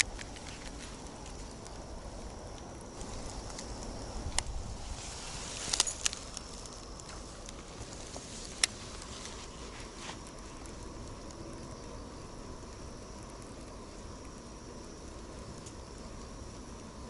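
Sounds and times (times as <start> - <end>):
sharp clicks: 0.0 - 1.7.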